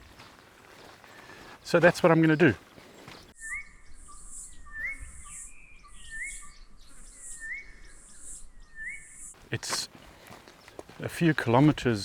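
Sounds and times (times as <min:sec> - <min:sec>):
bird whistling: 0:03.2 - 0:09.4.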